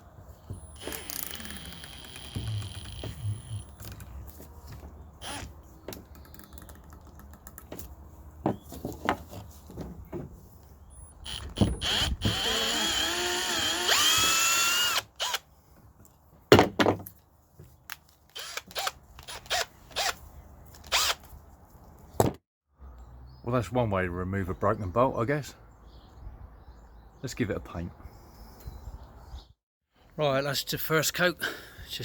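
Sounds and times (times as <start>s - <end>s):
electric drill running: 0.7s - 3.8s, 5.2s - 5.5s, 11.2s - 15.4s, 18.4s - 20.1s, 20.9s - 21.2s.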